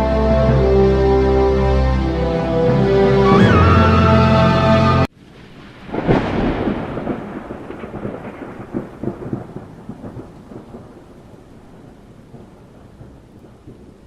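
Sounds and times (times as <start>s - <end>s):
rain hissing: 0.0s - 14.0s
thunderclap: 5.2s - 14.0s
rolling thunder: 5.3s - 14.0s.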